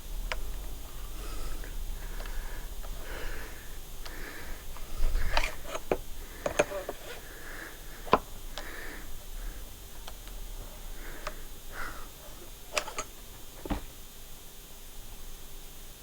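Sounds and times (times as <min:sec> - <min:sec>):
soft breathing: 0:00.3 - 0:14.0
tool handling clicks and knocks: 0:04.0 - 0:07.2, 0:08.0 - 0:08.8, 0:09.9 - 0:14.0.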